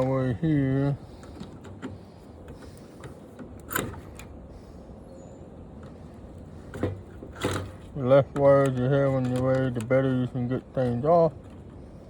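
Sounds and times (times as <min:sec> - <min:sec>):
light clicks and rubbing of wires: 0:07.4 - 0:11.8.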